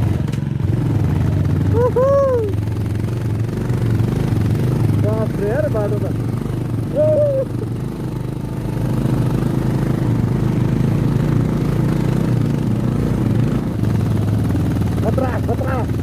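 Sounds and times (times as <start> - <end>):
motorcycle engine at low revs: 0.0 - 16.0.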